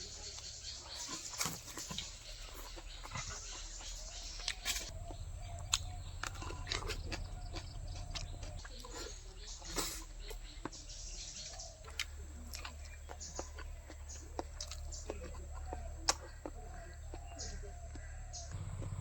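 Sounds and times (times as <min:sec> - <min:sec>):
wet mouth chewing: 0:00.4 - 0:10.8, 0:11.4 - 0:18.1
crunchy biting clicks: 0:04.4 - 0:08.9.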